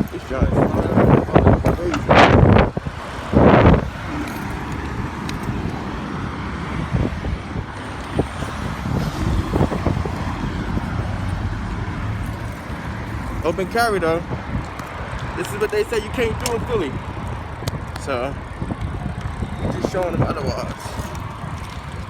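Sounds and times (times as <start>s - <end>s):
loud rush of noise: 0.0s - 15.4s
cars passing in steady rumble: 0.0s - 22.0s.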